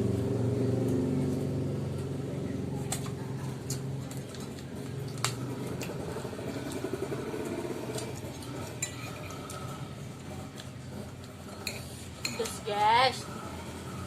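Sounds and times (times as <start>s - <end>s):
utensils clinking on a plate: 8.6s - 9.7s, 11.3s - 12.7s.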